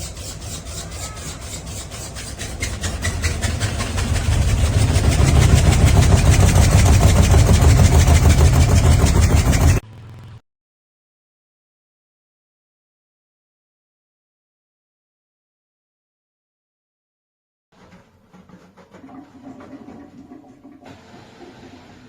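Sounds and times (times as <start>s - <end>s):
washing machine rumbling and rattling: 0.0s - 9.8s.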